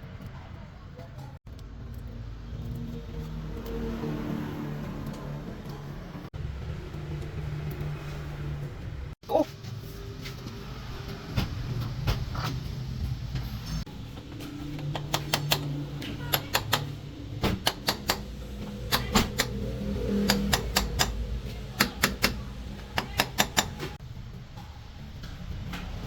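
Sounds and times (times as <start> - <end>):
hammer striking metal: 14.7 - 24.0.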